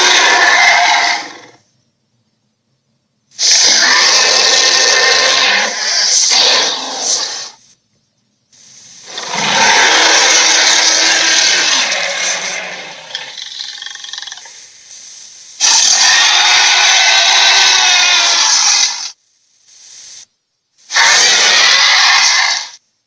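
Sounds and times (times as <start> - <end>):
dragon roar: 0.0 - 1.6, 3.4 - 7.5, 9.1 - 14.1, 15.7 - 19.0, 20.9 - 22.8.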